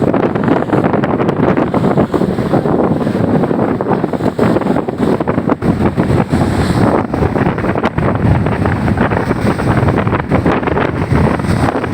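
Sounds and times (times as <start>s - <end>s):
wind buffeting microphone: 0.0s - 11.9s.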